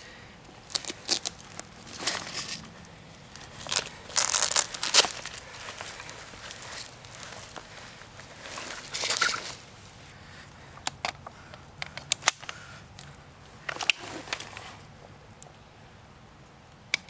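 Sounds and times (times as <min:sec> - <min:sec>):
rustling through dry leaves: 0:00.0 - 0:10.4, 0:13.4 - 0:14.9
twigs snapping: 0:00.4 - 0:09.7.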